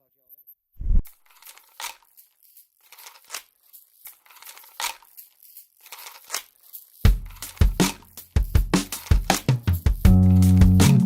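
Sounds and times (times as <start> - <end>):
rustling and scraping: 1.0 - 9.5.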